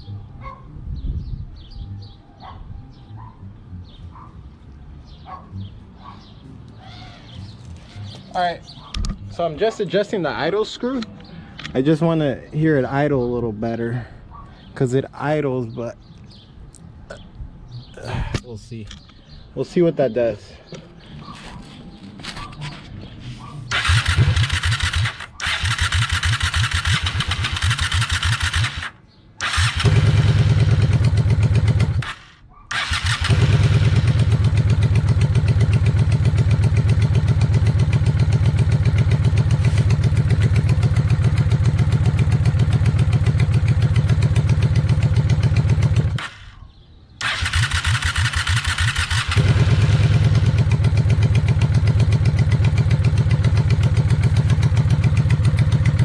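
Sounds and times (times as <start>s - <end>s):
motorcycle engine running: 21.0s - 28.9s, 29.5s - 46.6s, 47.2s - 56.0s
motorcycle electric starter cranking: 23.7s - 34.2s, 47.2s - 50.6s.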